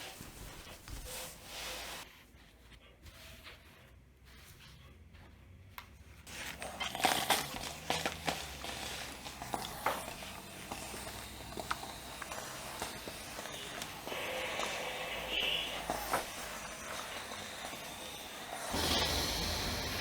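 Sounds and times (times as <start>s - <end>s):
rustling hiss: 6.3s - 20.0s.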